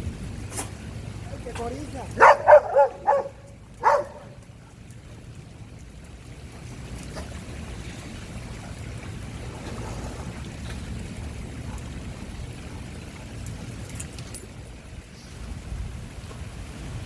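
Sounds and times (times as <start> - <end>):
water sloshing and lapping: 0.0 - 17.0
wind on microphone: 14.7 - 17.0.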